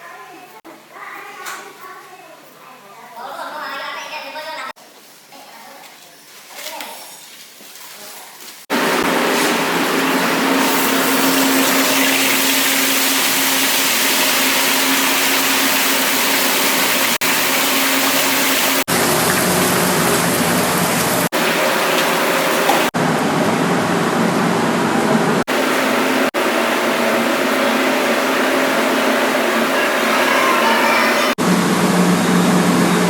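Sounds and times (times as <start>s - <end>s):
fish sizzling in hot oil: 10.6s - 22.9s.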